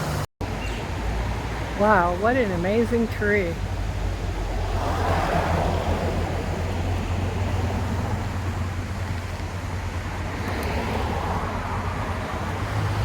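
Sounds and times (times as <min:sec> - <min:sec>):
street traffic noise: 0:00.0 - 0:13.0
car passing: 0:03.6 - 0:13.0.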